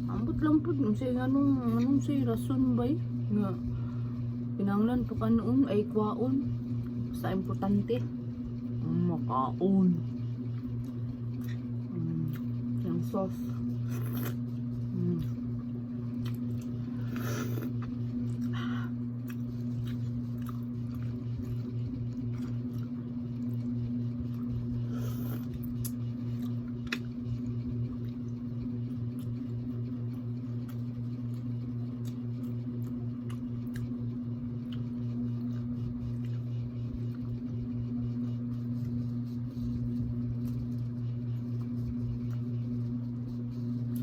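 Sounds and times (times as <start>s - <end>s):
steady low hum: 0.0s - 44.0s
person chewing: 13.8s - 15.5s, 16.1s - 28.3s, 30.4s - 34.0s.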